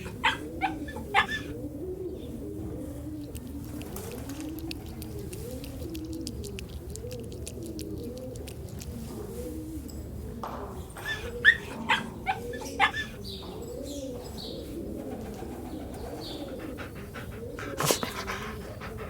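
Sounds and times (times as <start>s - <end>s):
puppies yelping: 0.0s - 1.6s, 11.0s - 13.3s, 16.2s - 19.0s
puppies whining: 0.0s - 1.8s, 11.0s - 14.1s, 16.2s - 19.0s.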